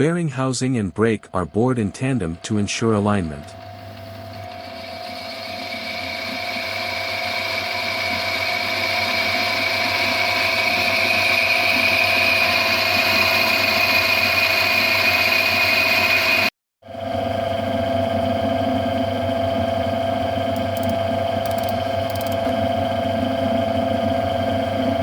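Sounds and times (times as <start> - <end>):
metal lathe machining whine: 2.1 - 25.0.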